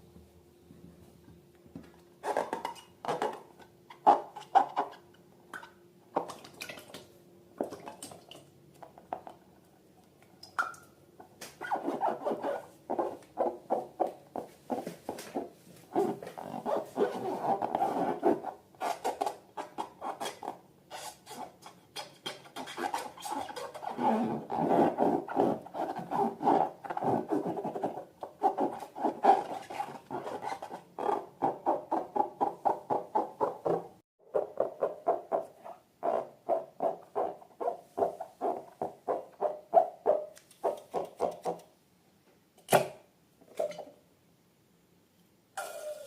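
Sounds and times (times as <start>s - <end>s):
rubber balloons squeaking: 11.6s - 21.6s, 22.4s - 41.6s.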